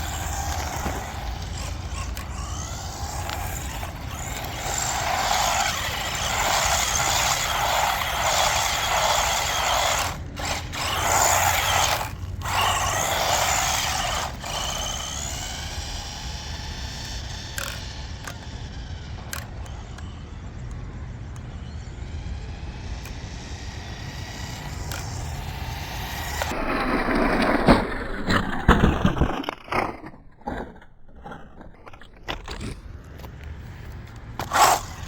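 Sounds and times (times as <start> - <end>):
small clicks: 0.0 - 21.7, 22.9 - 26.6
toy truck motor and tyres rushing: 0.0 - 35.0.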